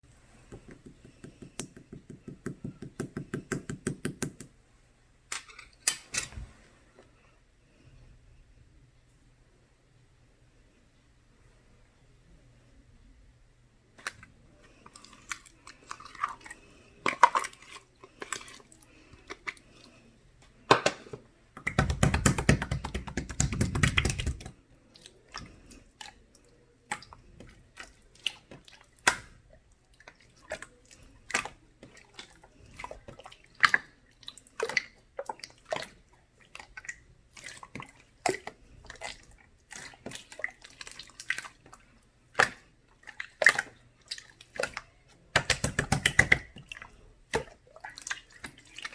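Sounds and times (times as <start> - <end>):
slime squishing: 21.6 - 48.9.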